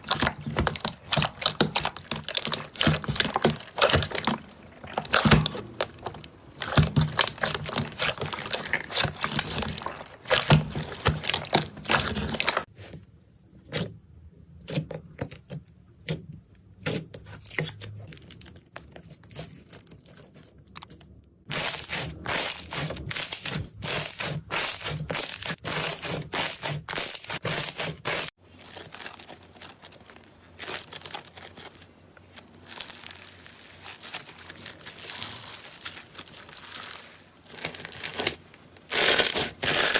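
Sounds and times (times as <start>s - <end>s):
slime squished by hand: 0.0s - 12.7s, 21.5s - 39.9s.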